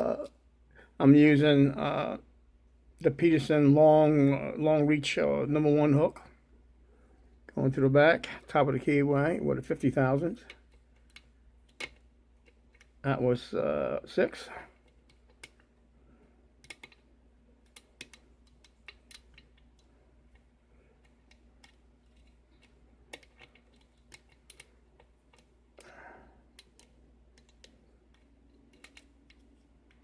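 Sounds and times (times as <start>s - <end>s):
lock pick clicking on pins: 16.6s - 25.9s, 26.5s - 29.5s.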